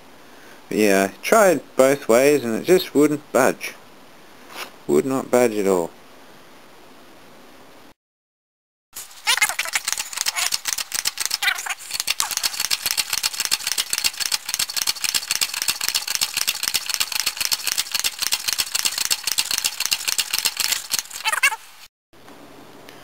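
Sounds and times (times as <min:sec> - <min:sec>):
fast metallic tool rattling: 0:09.0 - 0:21.5.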